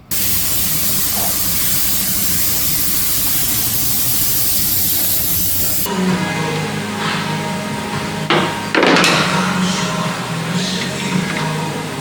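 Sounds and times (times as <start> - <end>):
hiss of rushing air: 0.0 - 5.9.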